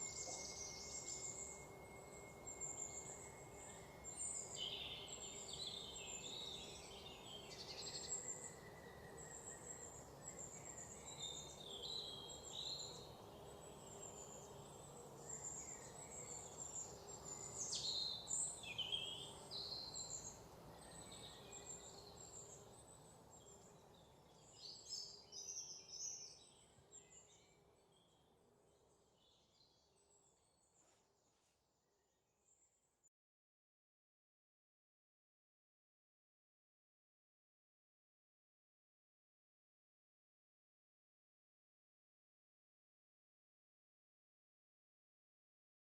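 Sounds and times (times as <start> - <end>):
birds chirping and trilling: 0.0 - 28.2.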